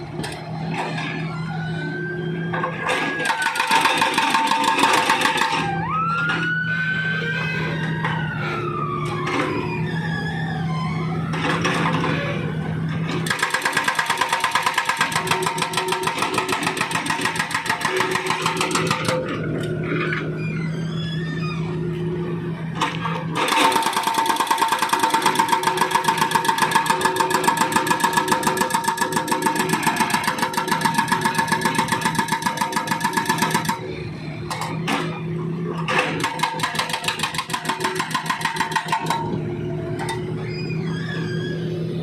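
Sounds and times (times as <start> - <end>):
excavator engine running: 0.0 - 42.0
hydraulic breaker hammering asphalt: 3.2 - 5.7, 13.2 - 19.3, 23.4 - 34.7, 35.8 - 39.4.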